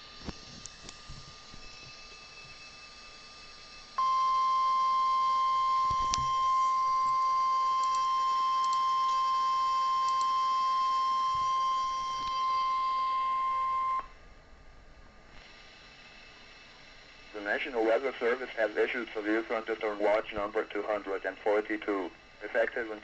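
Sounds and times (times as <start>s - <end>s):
steady warning alarm beep: 1.1s - 14.2s
radio hiss: 15.3s - 23.0s.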